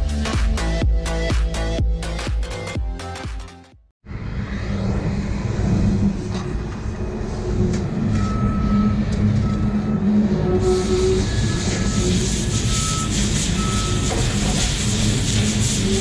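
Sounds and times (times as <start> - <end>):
reversing alarm beeping: 8.0 - 14.6.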